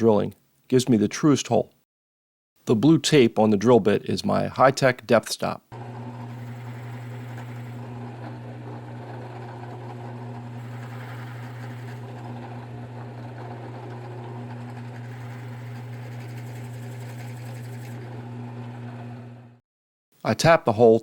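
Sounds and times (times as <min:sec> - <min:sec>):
power drill boring into wood: 0:05.8 - 0:19.5.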